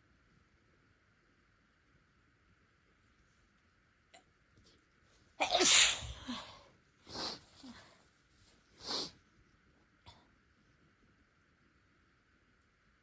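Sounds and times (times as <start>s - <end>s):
person sneezing: 5.4s - 7.4s.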